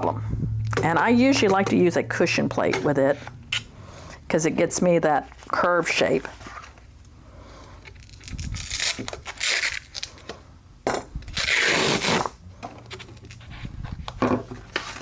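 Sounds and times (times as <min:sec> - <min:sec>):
items scraping and rustling on bench: 0:05.2 - 0:08.1, 0:12.0 - 0:15.0.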